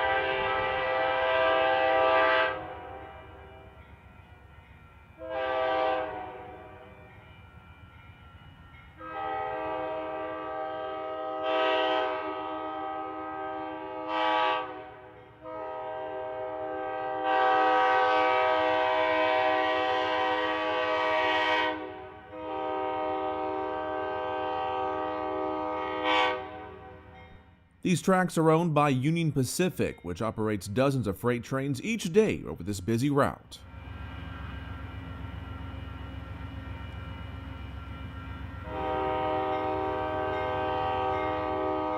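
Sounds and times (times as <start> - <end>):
locomotive air horn blasts: 0.0 - 3.2, 5.2 - 6.9, 9.0 - 27.1, 38.6 - 41.9.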